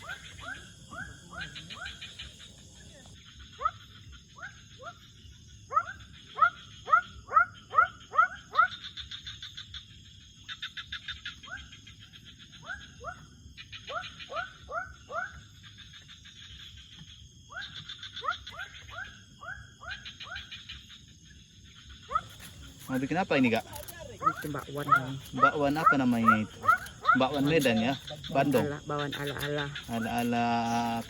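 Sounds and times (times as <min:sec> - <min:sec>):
high-pitched insect whine: 0:00.0 - 0:31.0
fast pulsing trills: 0:22.2 - 0:31.0.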